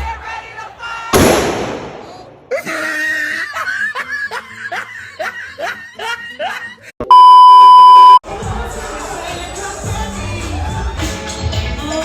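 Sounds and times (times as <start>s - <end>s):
person laughing in squealing bursts: 2.5s - 6.9s
loud steady bleep tone: 7.1s - 8.2s.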